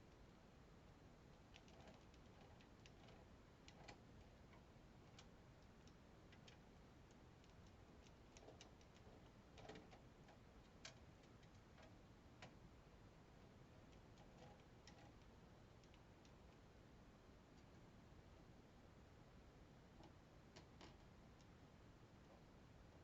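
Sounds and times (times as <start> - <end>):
small clicks and taps: 1.3 - 12.6, 13.8 - 16.6, 20.0 - 21.6.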